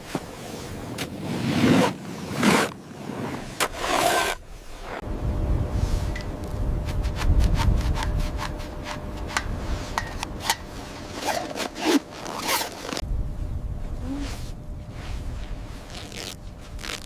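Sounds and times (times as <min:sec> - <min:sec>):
low wind rumble on microphone: 0:04.4 - 0:11.2, 0:12.2 - 0:17.0.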